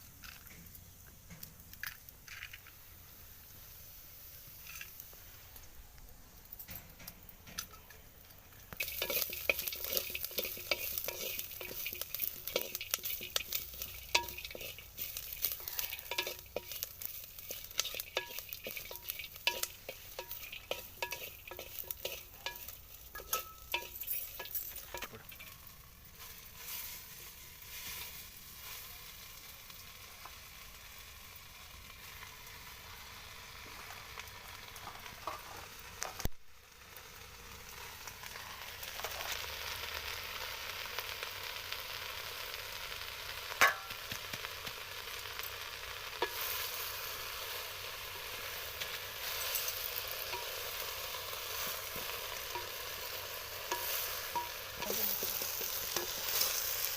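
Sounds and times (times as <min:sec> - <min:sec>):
vegetables sizzling in oil: 0:00.0 - 0:56.9
spatula scraping a pan: 0:08.8 - 0:25.6, 0:48.2 - 0:56.9.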